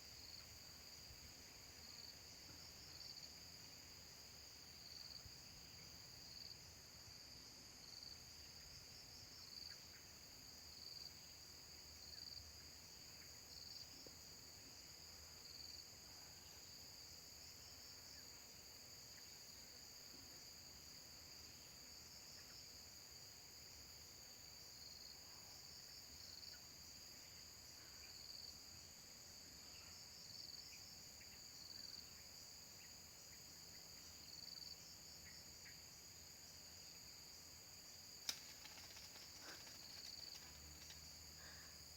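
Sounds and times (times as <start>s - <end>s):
insects droning: 0.0s - 41.9s.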